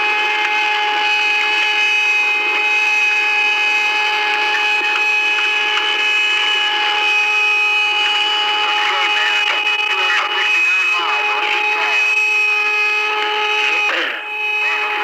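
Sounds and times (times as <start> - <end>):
radio hiss: 8.6 - 12.2, 13.2 - 15.0.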